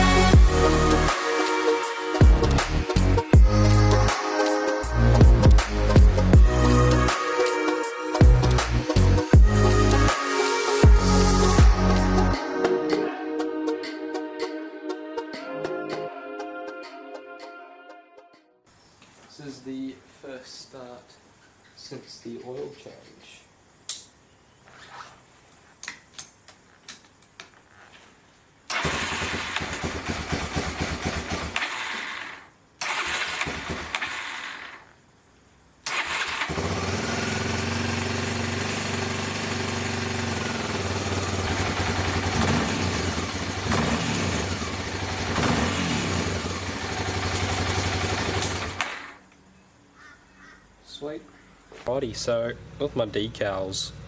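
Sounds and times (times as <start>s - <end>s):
motorcycle engine starting and running: 0.0s - 1.2s, 2.2s - 4.2s, 4.9s - 7.2s, 8.2s - 12.4s, 28.7s - 34.9s, 35.9s - 49.2s, 52.2s - 54.0s.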